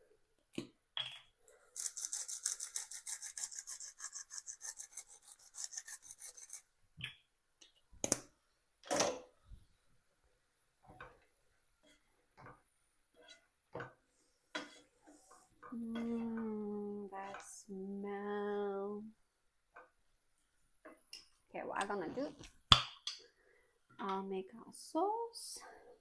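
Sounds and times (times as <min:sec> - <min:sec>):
pepper mill grinding: 0:01.8 - 0:06.6.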